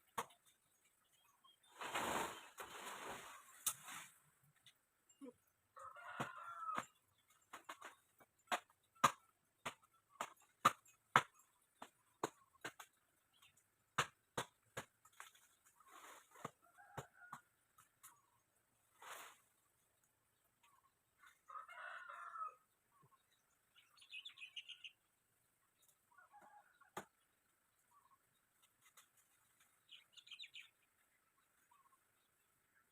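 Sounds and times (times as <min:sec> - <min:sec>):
faint bird chirp: 0:22.9 - 0:25.1, 0:25.7 - 0:32.9.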